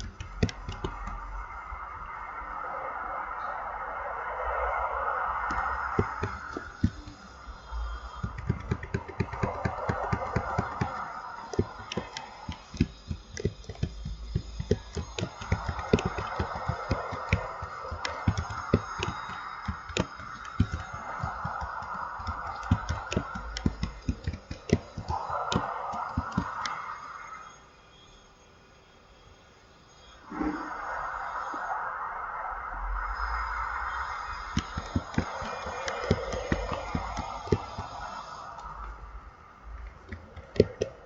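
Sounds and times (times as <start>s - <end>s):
sharp clicks and ticks: 0.0s - 1.5s, 5.4s - 26.9s, 34.0s - 39.0s, 39.7s - 41.0s.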